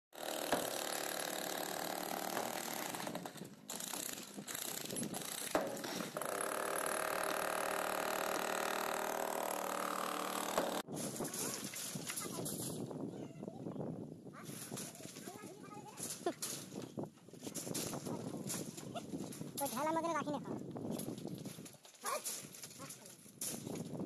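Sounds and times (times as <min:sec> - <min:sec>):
demolition hammer on concrete: 0:00.2 - 0:12.8.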